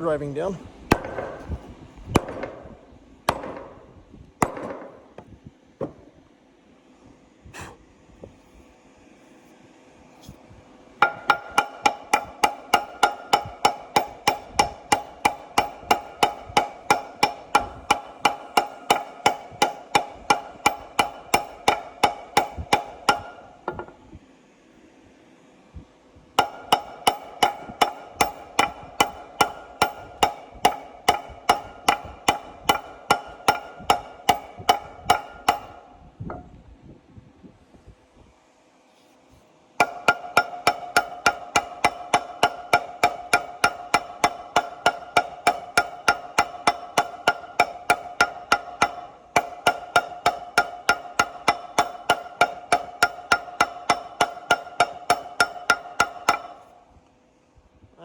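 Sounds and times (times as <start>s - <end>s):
hammer blows on metal ringing: 11.0s - 24.0s, 26.4s - 36.5s, 39.8s - 56.8s.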